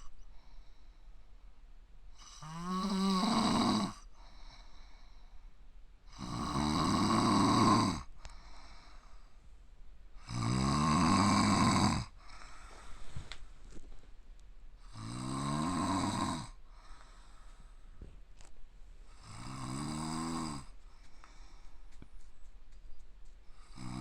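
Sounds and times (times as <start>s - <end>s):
man snoring loudly: 2.2s - 4.0s, 6.1s - 8.1s, 10.2s - 12.2s, 14.8s - 16.6s, 19.2s - 20.8s, 23.6s - 24.0s.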